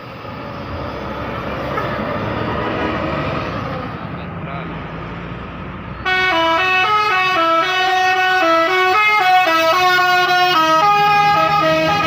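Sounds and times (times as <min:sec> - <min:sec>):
bus horn playing melody: 0:06.0 - 0:12.0.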